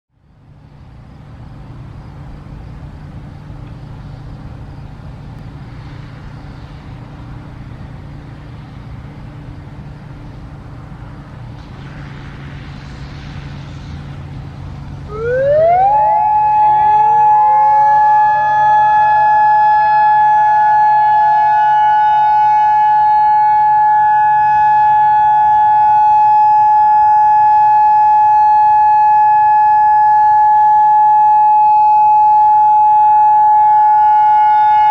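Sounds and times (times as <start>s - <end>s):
distant sirens winding up: 1.4s - 34.9s
electronic siren alert tone: 15.1s - 34.9s.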